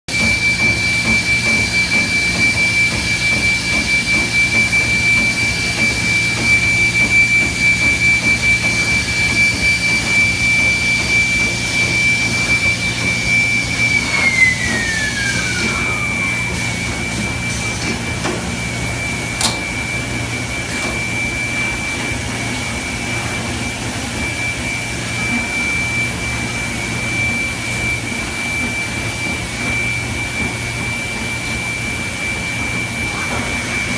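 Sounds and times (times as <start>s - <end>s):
drill spindle motor whining: 12.2s - 17.4s.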